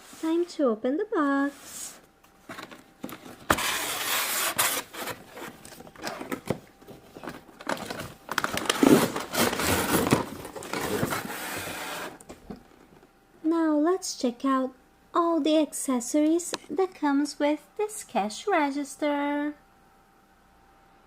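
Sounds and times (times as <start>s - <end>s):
packaging rustling and crinkling: 2.5s - 12.8s.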